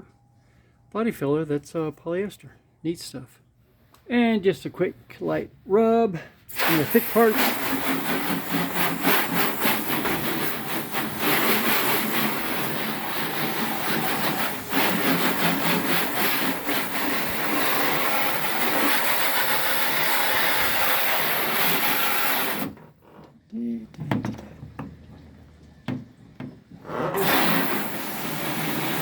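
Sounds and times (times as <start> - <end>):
rag rubbing over car hood: 6.6 - 19.1.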